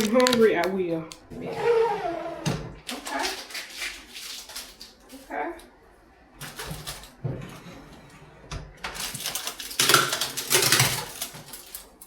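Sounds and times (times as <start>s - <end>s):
hard objects clattering: 0.0s - 1.3s, 8.9s - 12.0s.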